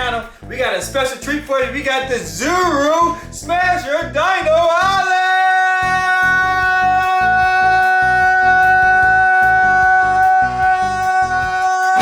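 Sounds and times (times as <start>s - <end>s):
person shouting a long high note: 4.9s - 12.0s.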